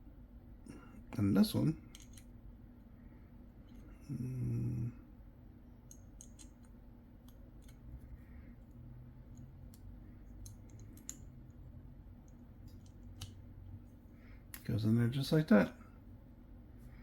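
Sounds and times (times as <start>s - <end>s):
person humming: 4.0s - 5.0s.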